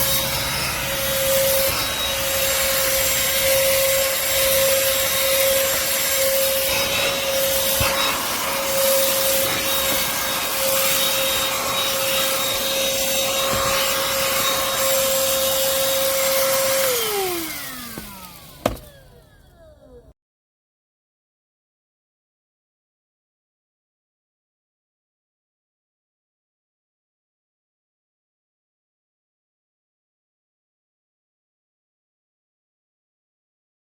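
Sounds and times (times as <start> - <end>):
handheld vacuum whining: 0.0 - 20.2
vacuum motor winding down: 0.0 - 20.2.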